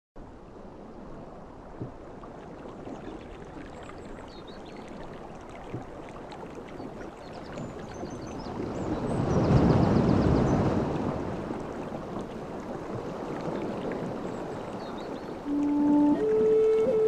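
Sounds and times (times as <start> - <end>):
sea surf washing: 7.7 - 17.0.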